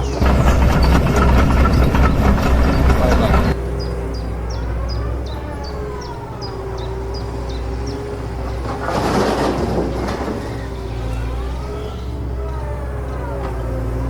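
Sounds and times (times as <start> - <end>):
electric motors whining: 0.0 - 3.6
noisy rush: 0.2 - 3.6.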